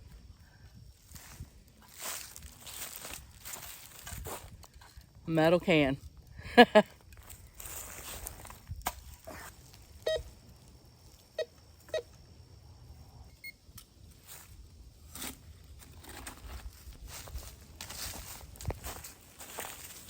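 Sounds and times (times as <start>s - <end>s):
metal detector beeps: 10.0s - 10.4s, 13.3s - 13.6s.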